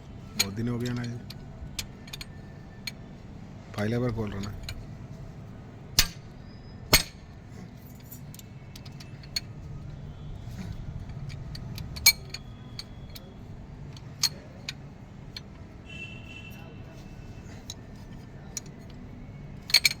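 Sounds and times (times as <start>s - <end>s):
low steady hum: 0.0s - 20.0s
metal tools clinking: 0.3s - 3.2s, 6.0s - 15.6s, 16.9s - 20.0s.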